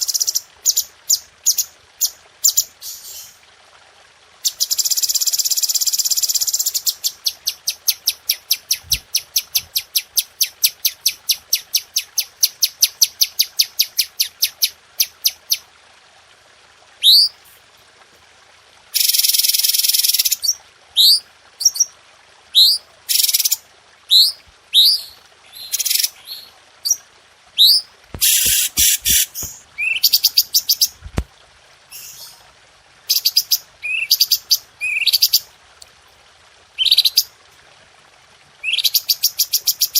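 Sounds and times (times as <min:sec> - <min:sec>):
songbird chirping and trilling: 0:29.0 - 0:30.9.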